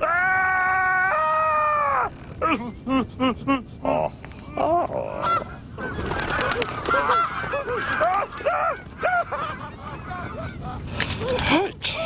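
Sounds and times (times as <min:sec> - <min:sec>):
geese honking: 0:05.2 - 0:10.8.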